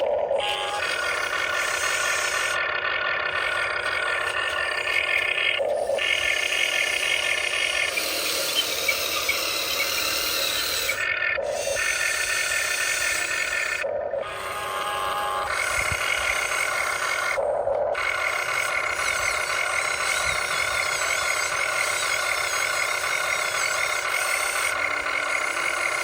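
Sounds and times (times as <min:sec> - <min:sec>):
electric motors whining: 0:00.0 - 0:26.0.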